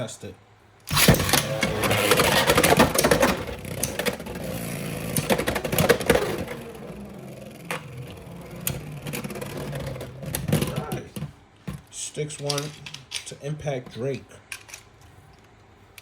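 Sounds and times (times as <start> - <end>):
spinning tops whirring: 0.9 - 11.2.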